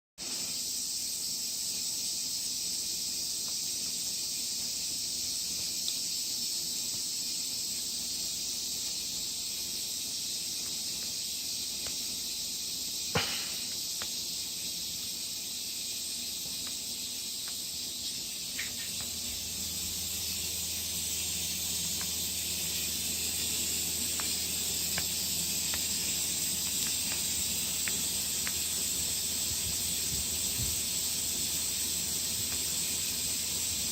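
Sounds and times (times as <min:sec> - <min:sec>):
aerosol can spraying: 0:16.1 - 0:33.9.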